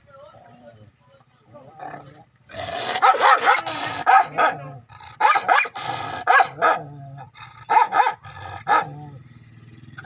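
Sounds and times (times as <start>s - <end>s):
dog barking: 3.0s - 6.9s, 7.7s - 9.0s.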